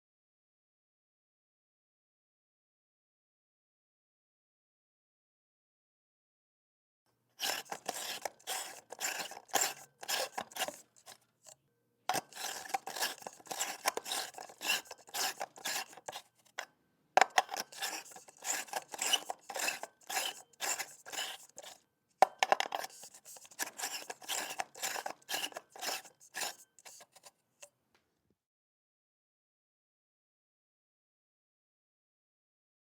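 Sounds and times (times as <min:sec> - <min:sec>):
light bulb base scraping in socket: 0:07.4 - 0:11.2, 0:12.1 - 0:16.3, 0:17.2 - 0:27.3.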